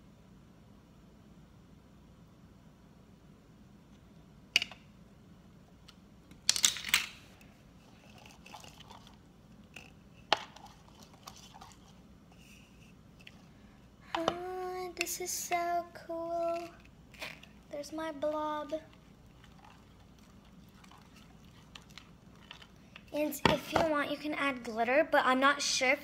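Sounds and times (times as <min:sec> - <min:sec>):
slime squelching in a bowl: 0:07.9 - 0:12.1, 0:16.0 - 0:23.2.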